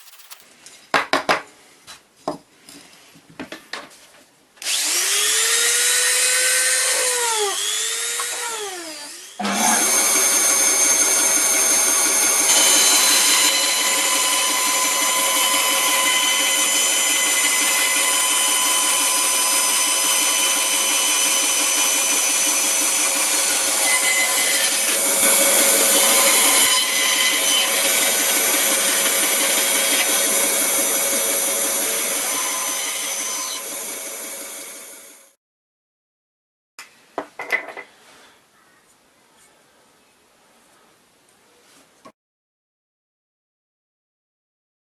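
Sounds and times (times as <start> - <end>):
power tool motor: 4.6 - 35.2.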